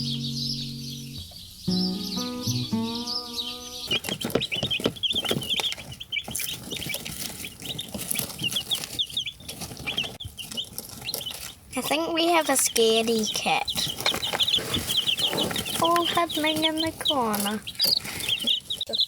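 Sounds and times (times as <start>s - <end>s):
background music: 0.0s - 4.0s
chicks peeping: 0.0s - 19.0s.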